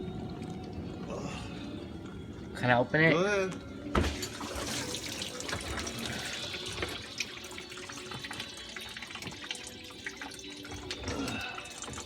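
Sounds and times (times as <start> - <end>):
dishwasher door clunk: 3.9 - 4.4
water splashing inside dishwasher: 3.9 - 12.0
small ticks and drips: 5.1 - 12.0.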